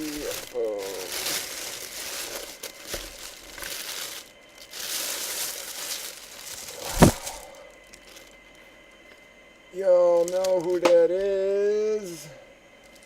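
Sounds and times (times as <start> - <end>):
packing wrap crinkling and tearing: 0.0 - 8.4
sharp thump: 6.9 - 7.4.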